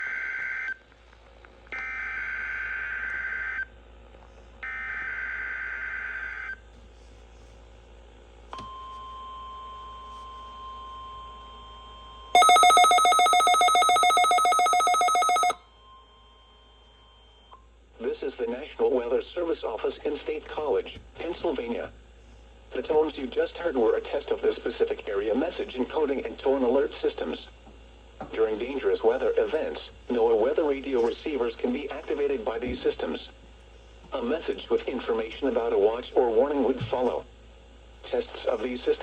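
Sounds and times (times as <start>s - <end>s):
rapidly pulsing alert tone: 12.4s - 15.6s.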